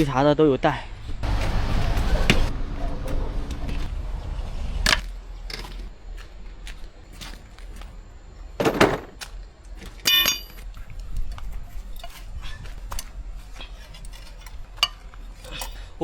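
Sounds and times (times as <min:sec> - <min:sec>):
ringing metal clang: 0:10.0 - 0:10.6
metal hand tools clinking: 0:10.0 - 0:10.7.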